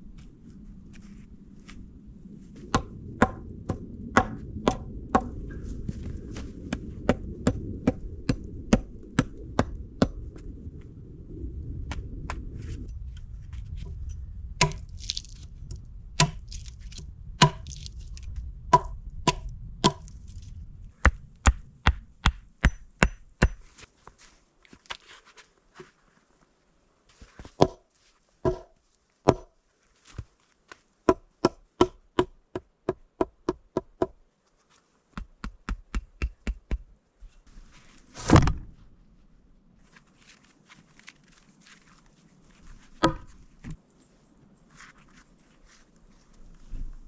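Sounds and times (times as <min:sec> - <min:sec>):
low steady rumble: 0:00.0 - 0:23.6
axe chopping wood: 0:02.7 - 0:05.3, 0:14.6 - 0:15.2, 0:16.2 - 0:16.6, 0:17.4 - 0:17.9, 0:18.7 - 0:20.1, 0:21.0 - 0:23.7, 0:27.6 - 0:27.8, 0:28.4 - 0:29.5, 0:31.1 - 0:34.1, 0:43.0 - 0:43.8.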